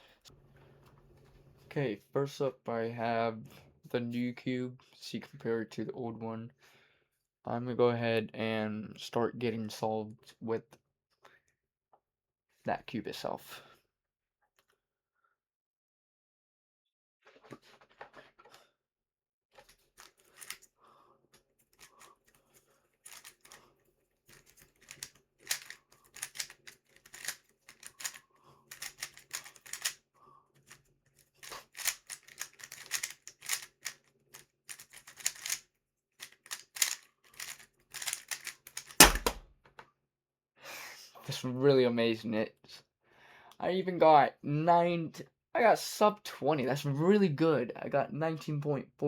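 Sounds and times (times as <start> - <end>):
speed cube clacking: 23.1 - 23.6, 24.3 - 30.0, 31.4 - 35.6, 36.2 - 39.4
loud slap: 39.0 - 39.4.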